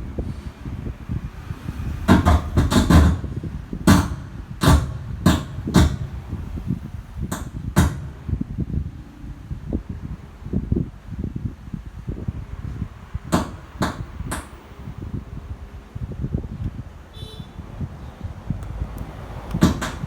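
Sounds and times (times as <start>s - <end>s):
low steady rumble: 0.0s - 20.0s
sharp knocks and taps: 2.1s - 6.4s, 7.3s - 8.3s, 13.3s - 14.6s, 18.6s - 20.0s.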